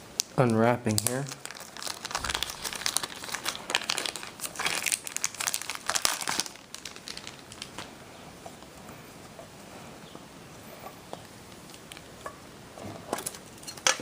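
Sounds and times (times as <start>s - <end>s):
packaging crinkling: 0.2s - 8.0s.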